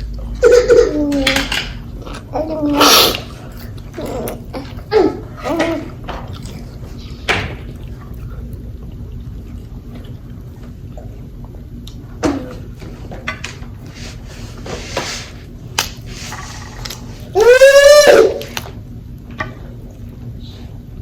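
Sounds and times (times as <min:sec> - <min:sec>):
wet chewing and mouth smacking: 0:03.0 - 0:12.0.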